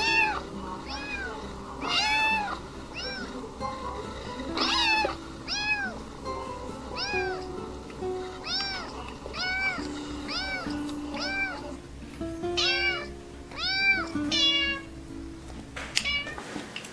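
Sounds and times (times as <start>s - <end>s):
cat meowing: 0.0s - 3.4s, 4.6s - 6.0s, 7.0s - 7.4s, 8.4s - 11.8s, 12.6s - 14.9s, 16.0s - 16.4s
background music: 0.0s - 16.2s.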